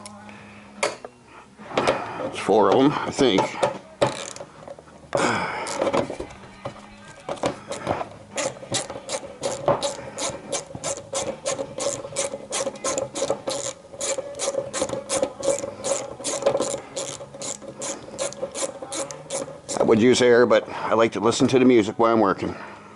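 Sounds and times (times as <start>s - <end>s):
hand ratchet clicking: 4.0s - 4.5s, 5.6s - 6.0s, 7.4s - 19.9s.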